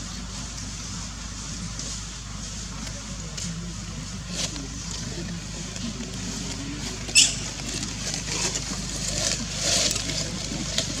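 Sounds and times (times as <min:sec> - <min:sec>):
steady low hum: 0:00.0 - 0:11.0
scratchy rustling: 0:04.2 - 0:11.0
baby monkey squealing: 0:07.2 - 0:07.5.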